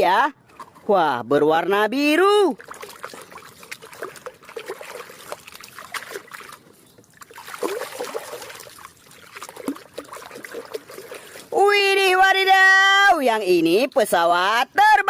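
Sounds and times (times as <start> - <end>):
water trickling and splashing: 0.3 - 1.2, 2.1 - 14.4.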